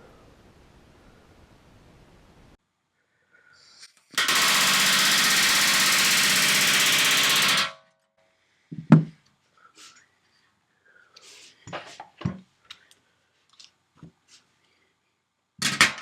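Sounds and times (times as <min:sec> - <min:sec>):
pneumatic rivet gun hammering: 0:04.2 - 0:07.8.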